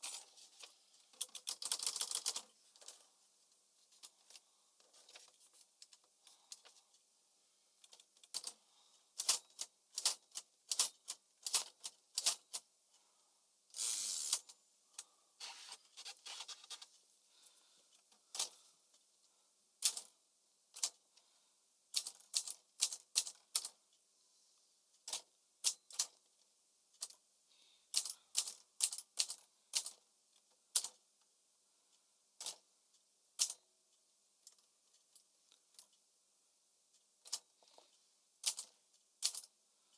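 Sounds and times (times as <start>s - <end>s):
typewriter rasping sound: 1.2s - 2.4s.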